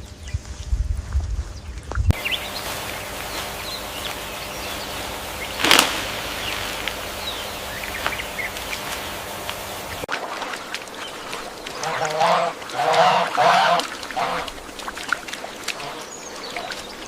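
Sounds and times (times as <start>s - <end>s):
steady noisy hiss: 2.2s - 10.1s.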